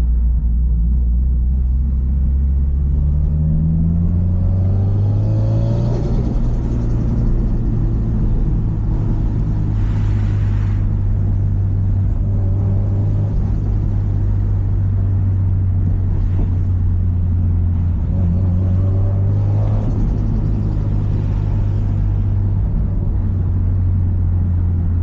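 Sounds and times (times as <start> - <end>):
engine rumbling: 0.0 - 25.0.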